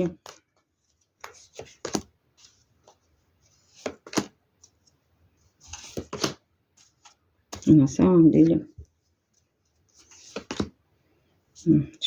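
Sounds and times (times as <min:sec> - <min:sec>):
cards rustling and tapping: 0:00.0 - 0:05.0, 0:05.6 - 0:07.8, 0:08.8 - 0:10.8.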